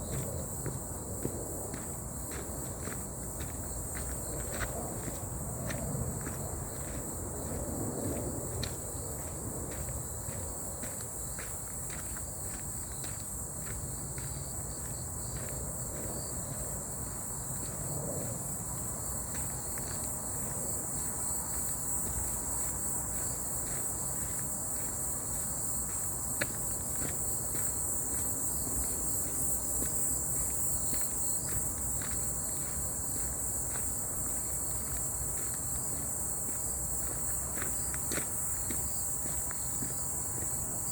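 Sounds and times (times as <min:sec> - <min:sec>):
footsteps on forest path: 0:00.0 - 0:40.9
insects chirping: 0:00.0 - 0:40.9.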